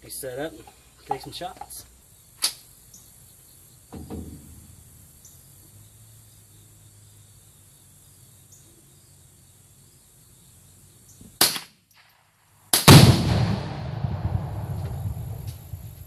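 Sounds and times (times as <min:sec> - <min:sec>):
rifle shots: 0:11.4 - 0:11.7, 0:12.7 - 0:16.0
exploding target boom: 0:12.9 - 0:16.0.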